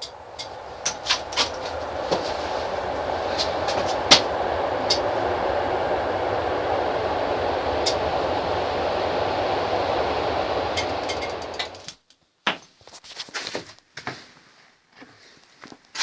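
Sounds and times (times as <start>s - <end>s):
loud steady rushing noise: 0.0s - 12.0s.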